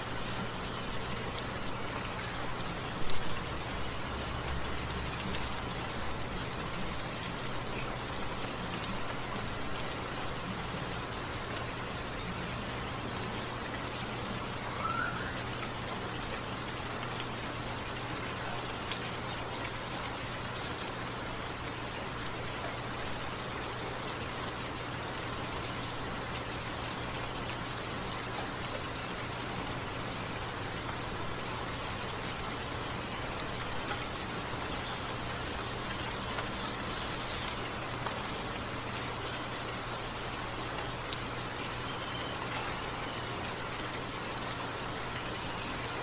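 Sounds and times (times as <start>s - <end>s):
steady rain hiss: 0.0s - 46.0s.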